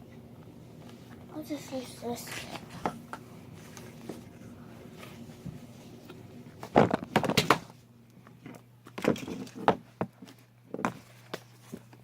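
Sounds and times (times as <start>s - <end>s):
knocks and clatter of supplies: 6.6s - 7.7s.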